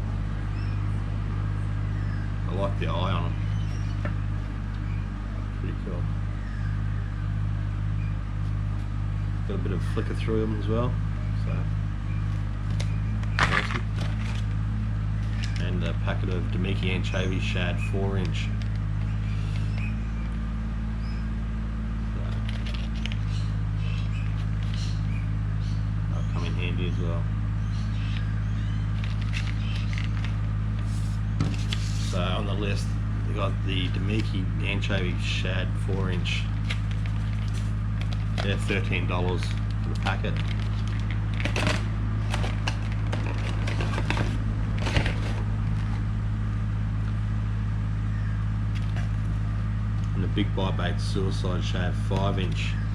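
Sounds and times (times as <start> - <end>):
low mechanical hum: 0.0 - 52.9
packets rustling: 12.6 - 14.5, 28.9 - 32.2, 36.6 - 46.0
plastic packet crinkling: 39.3 - 45.8.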